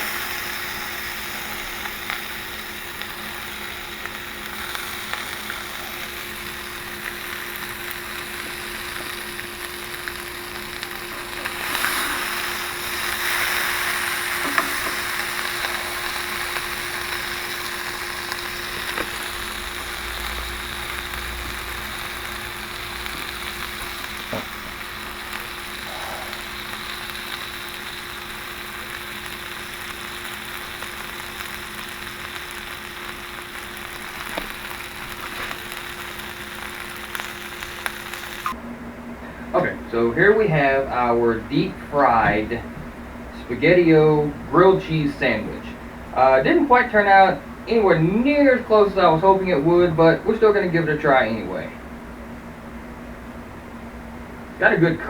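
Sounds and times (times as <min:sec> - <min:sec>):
sandwich sizzling in a pan: 0:00.0 - 0:38.6.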